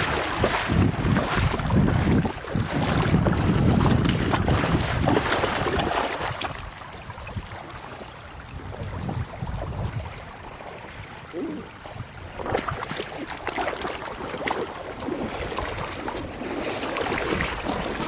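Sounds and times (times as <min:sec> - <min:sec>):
wind buffeting microphone: 0:00.0 - 0:13.1
water sloshing and splashing: 0:00.0 - 0:18.0.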